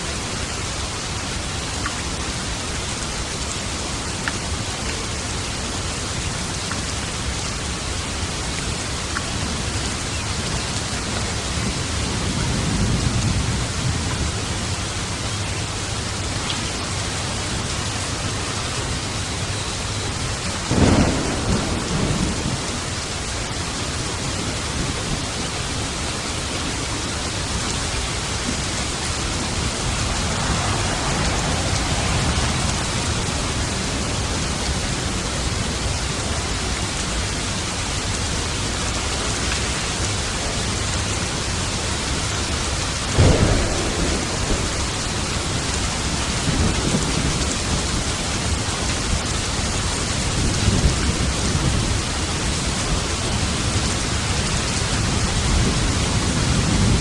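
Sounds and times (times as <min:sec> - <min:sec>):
heavy rain: 0:00.0 - 0:57.0
thunder claps rumbling: 0:20.1 - 0:37.5, 0:42.2 - 0:57.0.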